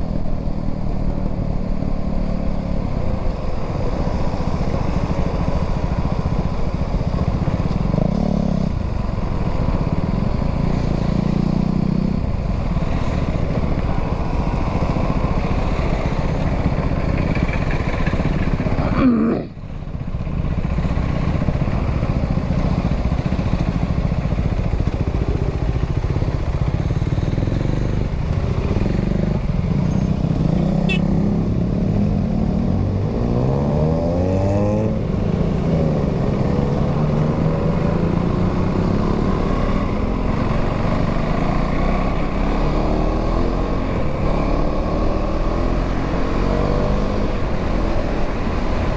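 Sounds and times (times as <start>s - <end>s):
motorcycle engine running: 0.0s - 33.8s.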